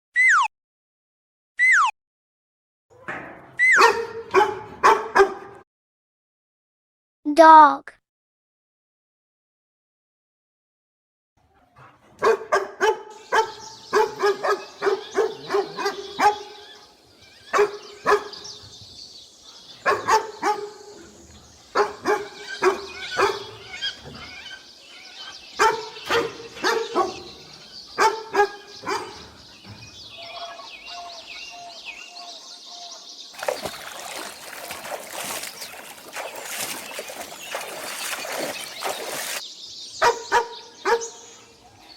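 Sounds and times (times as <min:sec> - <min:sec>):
dog barking: 0:03.7 - 0:05.6, 0:11.6 - 0:16.9, 0:17.5 - 0:18.4, 0:19.5 - 0:21.0, 0:21.7 - 0:23.6, 0:25.6 - 0:27.4, 0:28.0 - 0:29.3, 0:40.0 - 0:41.2.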